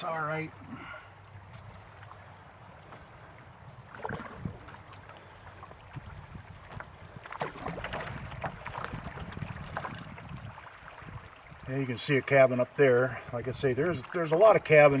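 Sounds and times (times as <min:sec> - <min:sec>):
rushing river water: 0:00.0 - 0:15.0
paddle strokes splashing: 0:00.5 - 0:15.0
wind on microphone: 0:04.0 - 0:04.9, 0:05.6 - 0:11.7.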